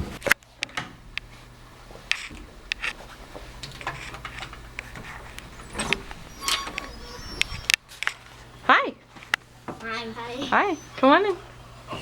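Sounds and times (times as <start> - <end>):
luggage cart rumbling: 3.6 - 8.6.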